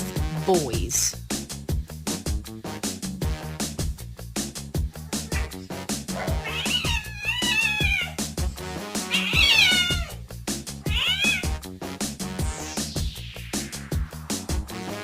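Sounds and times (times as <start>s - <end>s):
cat meowing: 5.0s - 8.2s, 9.0s - 10.2s, 10.8s - 11.5s
electronic music with steady beat: 12.1s - 15.0s.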